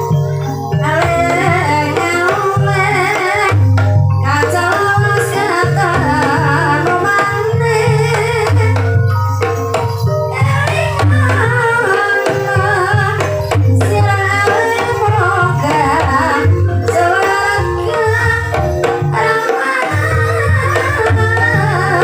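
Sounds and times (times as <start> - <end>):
gamelan tones: 0.0 - 22.0
hand drums beating: 0.0 - 22.0
wavering melody: 0.0 - 22.0.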